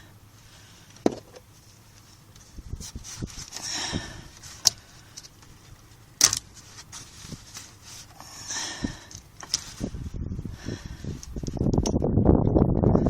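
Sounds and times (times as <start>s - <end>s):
rustling: 1.5s - 10.2s.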